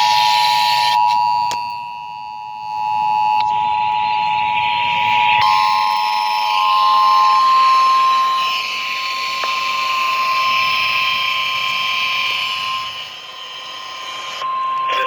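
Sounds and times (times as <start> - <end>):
radio hiss: 14.0 - 15.0.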